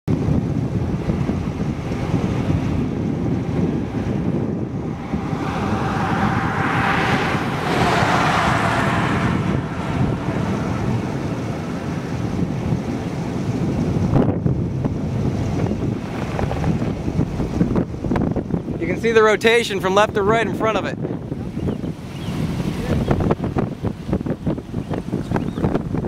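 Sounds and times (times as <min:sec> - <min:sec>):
wind buffeting microphone: 0:00.1 - 0:26.0
car passing: 0:02.2 - 0:14.1.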